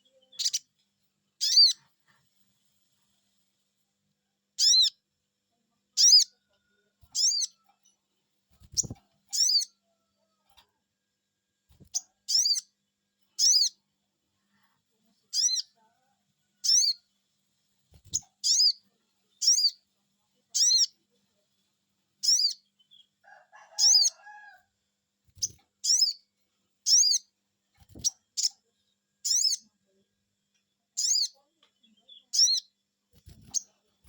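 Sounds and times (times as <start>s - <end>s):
bird sharp high calls: 1.4s - 1.8s, 4.6s - 5.0s, 7.1s - 7.6s, 8.7s - 9.7s, 11.9s - 12.7s.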